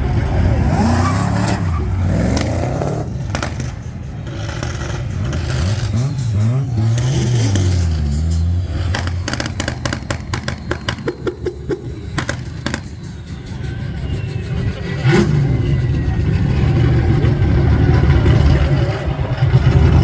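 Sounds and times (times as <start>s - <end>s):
car engine revving: 0.0s - 20.0s
exhaust crackles and pops: 2.4s - 20.0s.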